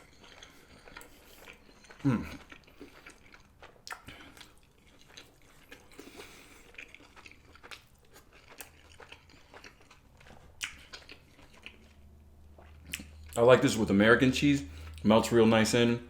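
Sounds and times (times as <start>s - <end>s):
chewing crunches: 0.0s - 13.8s
wet mouth clicks: 3.8s - 4.5s.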